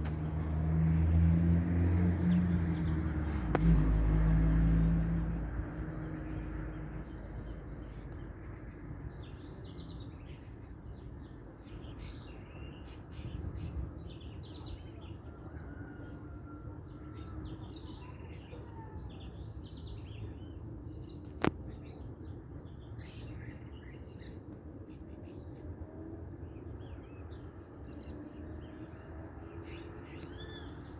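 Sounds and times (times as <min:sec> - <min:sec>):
small birds chirping: 0:17.2 - 0:30.9.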